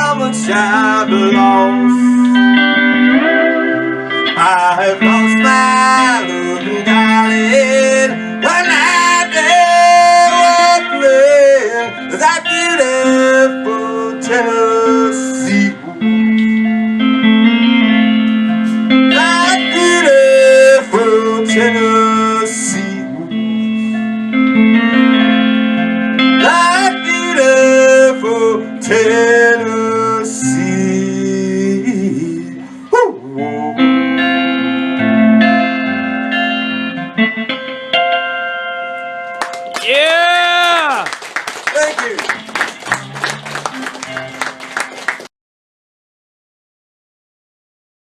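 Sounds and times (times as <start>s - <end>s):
guitar band music: 0.0s - 45.3s.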